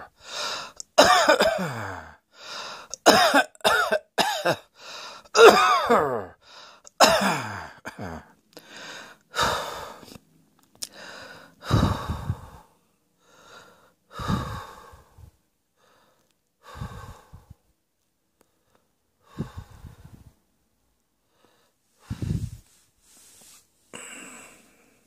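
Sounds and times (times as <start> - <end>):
person coughing: 1.0 - 2.1, 3.0 - 4.7, 5.3 - 8.3
quick breath in: 10.9 - 12.7, 13.3 - 15.4, 16.0 - 17.6, 19.3 - 20.3.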